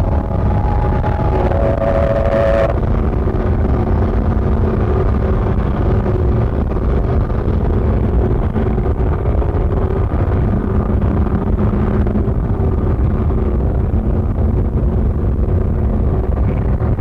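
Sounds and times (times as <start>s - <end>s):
high held tone: 0.0s - 3.3s
faint drones: 0.0s - 17.0s
rumbling wall of noise: 0.0s - 17.0s.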